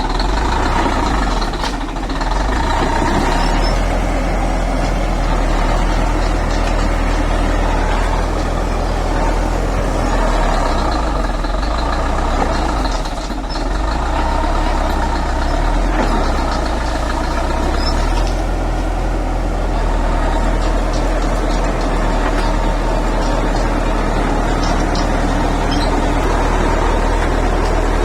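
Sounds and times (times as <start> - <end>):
heavy diesel engine running: 0.0 - 28.0.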